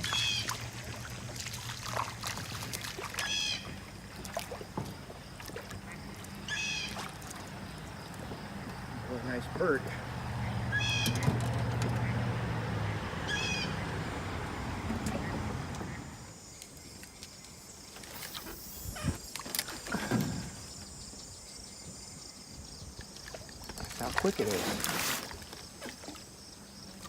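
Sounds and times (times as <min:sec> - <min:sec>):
outdoor noise: 0:00.0 - 0:27.0
bird chirping calls: 0:10.4 - 0:14.0.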